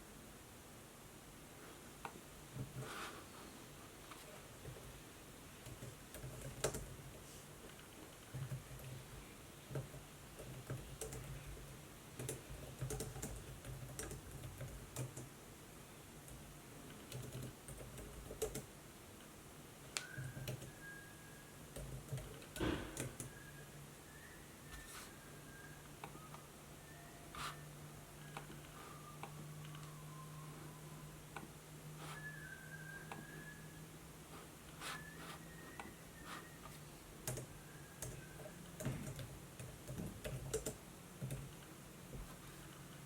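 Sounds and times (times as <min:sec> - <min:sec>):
laptop keyboard typing: 0:05.6 - 0:15.3, 0:16.2 - 0:18.7, 0:20.1 - 0:20.8, 0:21.7 - 0:23.3, 0:35.8 - 0:43.0
thin high tone: 0:24.8 - 0:31.2.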